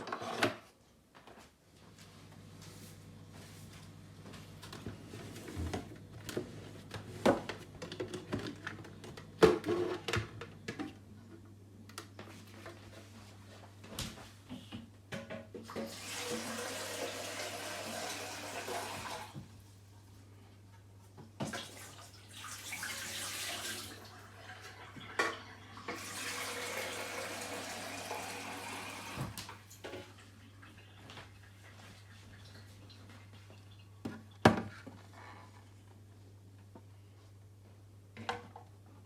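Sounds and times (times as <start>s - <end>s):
water running: 15.7s - 19.5s, 21.4s - 34.3s.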